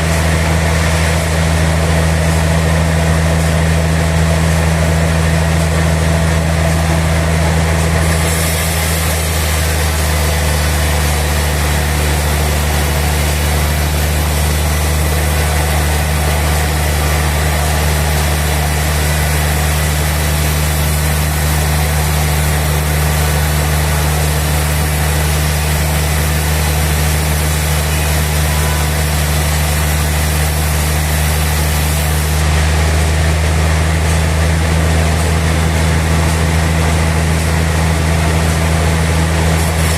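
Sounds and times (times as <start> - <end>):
sawmill machinery humming: 0.0 - 39.9.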